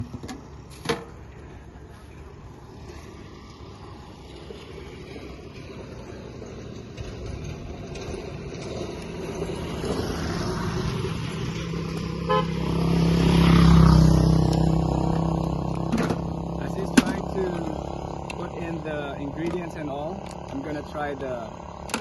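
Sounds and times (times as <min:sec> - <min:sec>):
vehicle engine passing: 0:00.0 - 0:21.9
car horn toot: 0:12.3 - 0:12.6.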